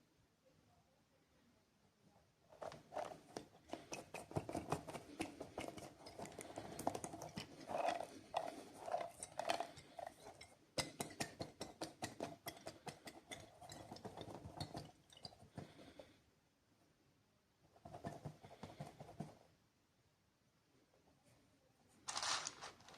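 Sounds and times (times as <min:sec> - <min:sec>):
plastic wrappers crinkling: 0:22.1 - 0:22.9.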